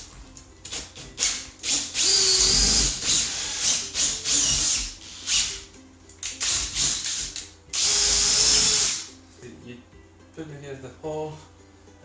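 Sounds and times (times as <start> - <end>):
power drill whining: 1.2 - 5.6, 6.3 - 9.1.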